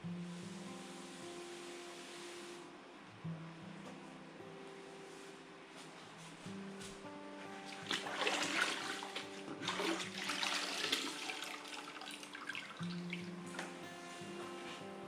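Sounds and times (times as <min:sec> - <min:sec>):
background music: 0:00.0 - 0:15.0
water splashing and trickling: 0:07.8 - 0:13.6.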